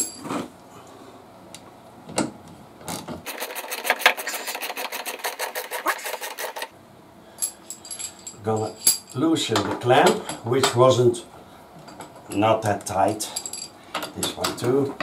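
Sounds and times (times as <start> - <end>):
rapid metallic clicking: 3.3 - 6.7.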